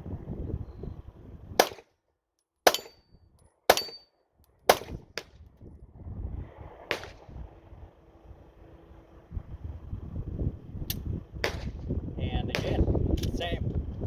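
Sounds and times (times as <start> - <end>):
pistol shots: 1.6 - 1.9, 2.6 - 3.0, 3.7 - 4.0, 4.7 - 5.3, 6.9 - 7.3, 11.4 - 11.8, 12.5 - 12.9.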